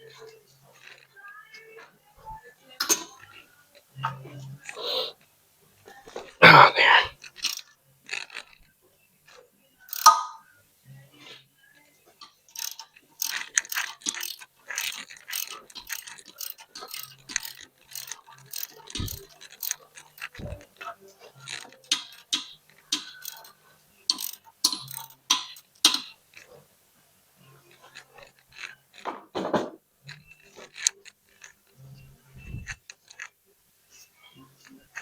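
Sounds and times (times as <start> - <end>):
metallic clicking of hand tools: 9.3 - 10.4, 12.2 - 20.6, 21.5 - 26.5.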